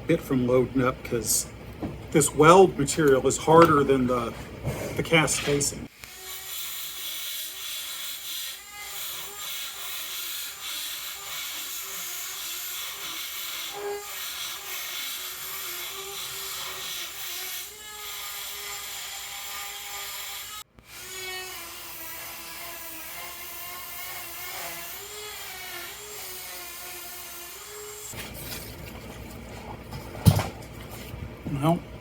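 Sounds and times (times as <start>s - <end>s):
rotary tool grinding metal: 6.0s - 28.6s.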